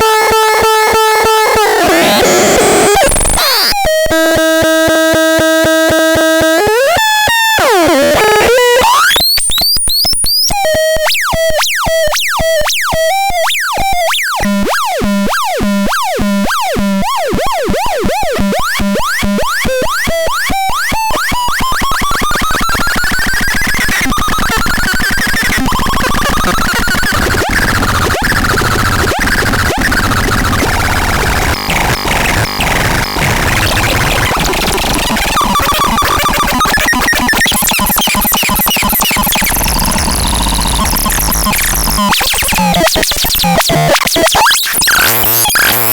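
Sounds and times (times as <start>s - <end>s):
synthesizer tones and glides: 30.5s - 43.6s.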